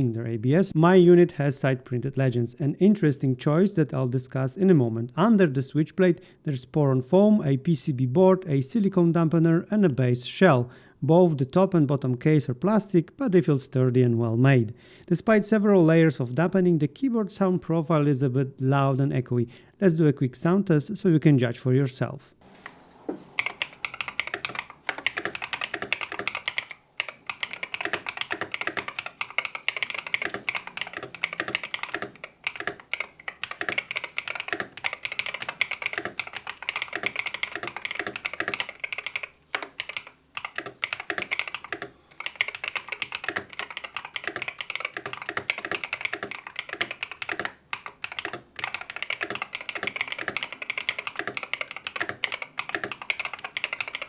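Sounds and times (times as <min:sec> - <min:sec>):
fast keyboard typing: 0:23.4 - 0:54.0.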